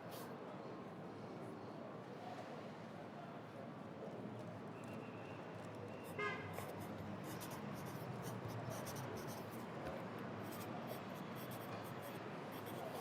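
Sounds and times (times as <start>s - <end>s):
low hum of city traffic: 0.3s - 13.0s
pencil scratching on paper: 6.5s - 9.6s, 10.4s - 13.0s.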